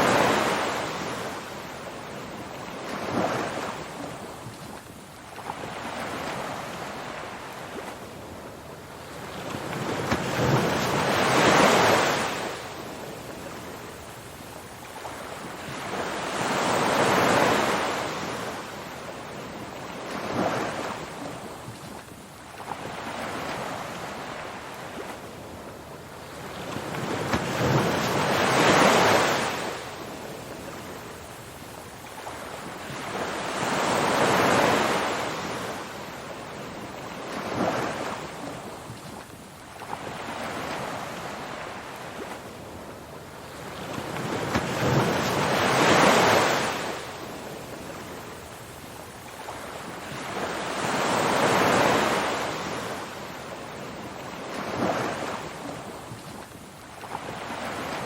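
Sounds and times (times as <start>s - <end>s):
ocean waves breaking: 0.0s - 14.2s, 14.9s - 58.0s.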